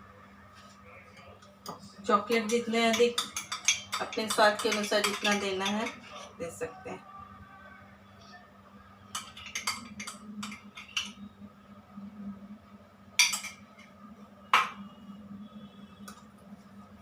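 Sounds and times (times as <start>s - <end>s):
spoon clinking against bowl: 2.3s - 6.3s, 9.1s - 11.2s.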